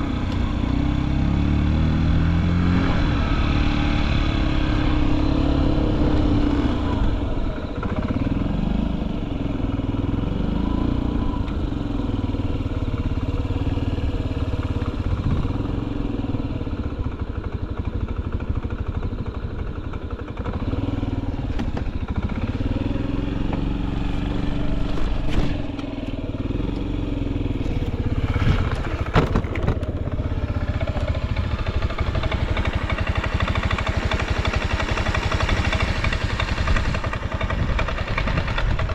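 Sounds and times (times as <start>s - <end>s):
scooter engine revving: 19.8s - 38.9s.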